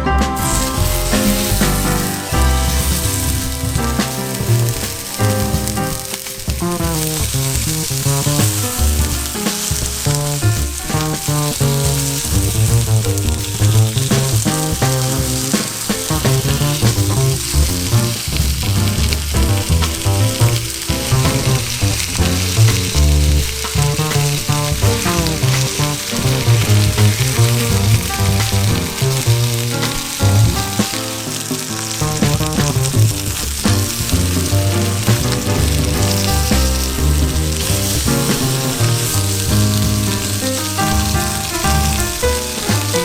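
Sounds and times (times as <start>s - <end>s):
background music with bass line: 0.0s - 43.0s
food sizzling in a pan: 0.4s - 5.3s, 19.8s - 43.0s.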